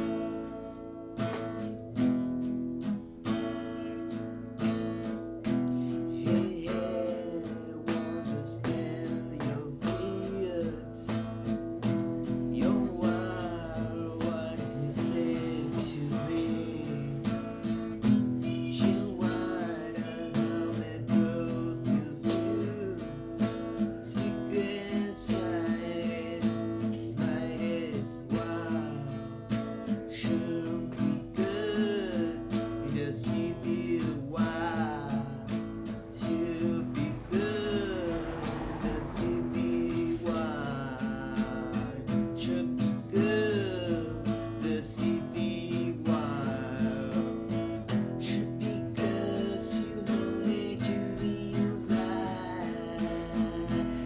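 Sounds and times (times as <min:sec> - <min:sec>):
strummed acoustic guitar: 0:00.0 - 0:54.0.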